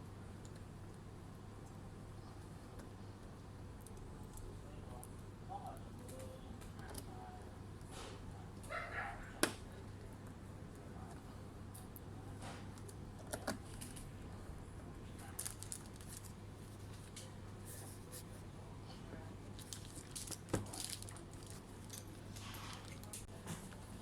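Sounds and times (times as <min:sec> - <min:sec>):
clicks and rustling of laptop parts: 0:12.4 - 0:14.0.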